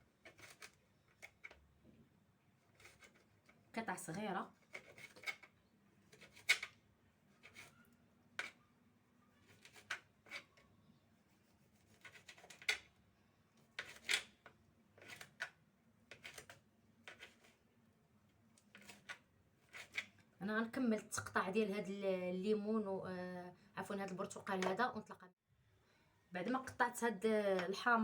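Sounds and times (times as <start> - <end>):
knife cutting an orange: 4.6 - 8.7, 9.4 - 10.7, 13.6 - 17.6.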